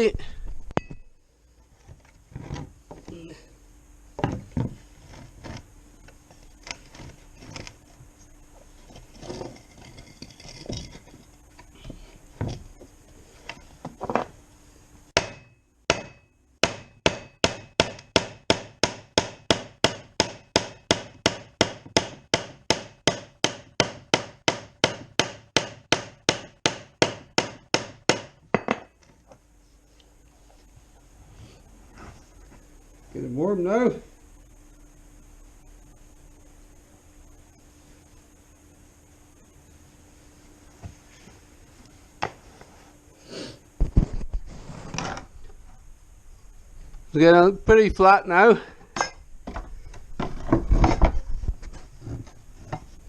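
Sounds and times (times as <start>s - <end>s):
hammer striking plastic: 15.2s - 28.8s.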